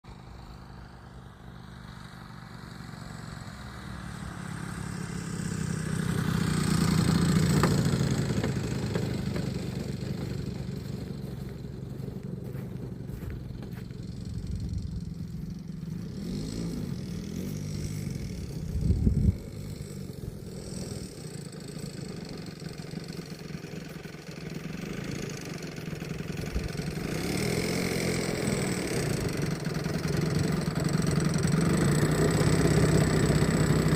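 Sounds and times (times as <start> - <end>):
model airplane engine and propeller: 0.0 - 33.9
low rumble: 9.1 - 20.4.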